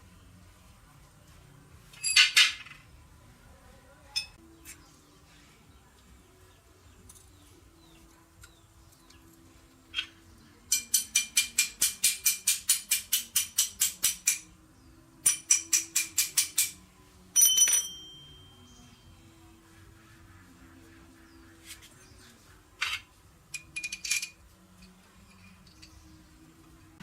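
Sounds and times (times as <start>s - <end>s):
rapid metal-on-metal tapping: 10.7s - 14.5s, 15.2s - 16.8s.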